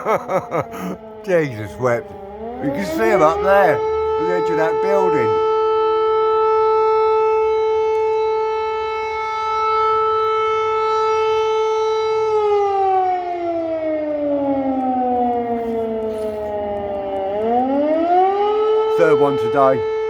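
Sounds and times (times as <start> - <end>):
air-raid siren wailing: 0.0 - 20.0.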